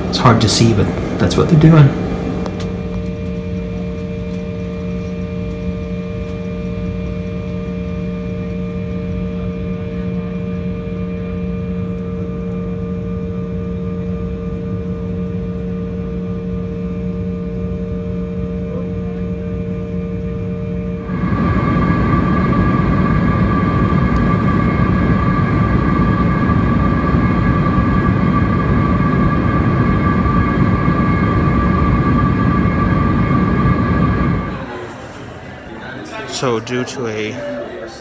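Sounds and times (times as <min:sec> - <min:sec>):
airliner cabin drone: 0:00.0 - 0:38.0.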